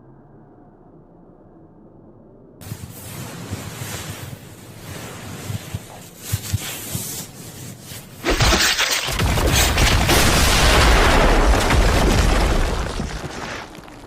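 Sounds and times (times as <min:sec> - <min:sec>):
deep rumble: 0:00.0 - 0:06.1.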